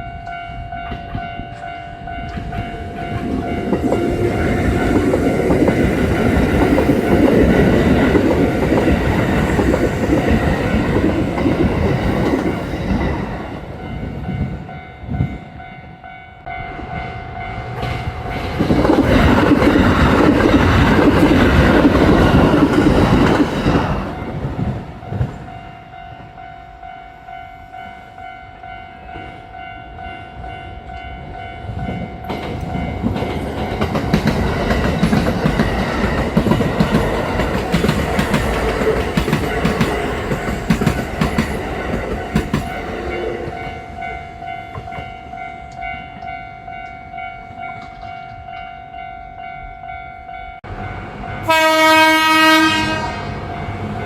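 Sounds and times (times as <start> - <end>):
steady high tone: 0.0 - 18.4
electric train passing: 0.0 - 54.0
wheels clattering over rail joints: 32.2 - 44.0.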